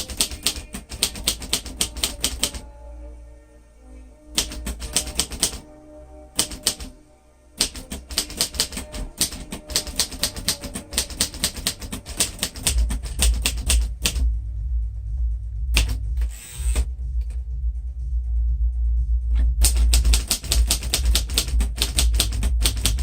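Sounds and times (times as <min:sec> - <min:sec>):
typewriter key strikes: 0:00.0 - 0:02.6, 0:04.4 - 0:05.6, 0:06.4 - 0:06.9, 0:07.6 - 0:14.2, 0:15.8 - 0:16.0, 0:19.6 - 0:23.0.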